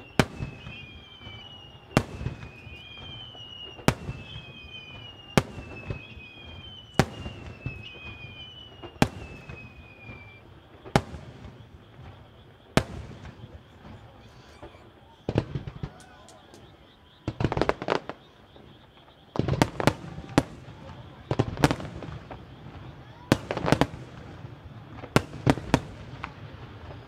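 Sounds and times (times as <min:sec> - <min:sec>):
descending firework whistles: 0:00.0 - 0:27.0.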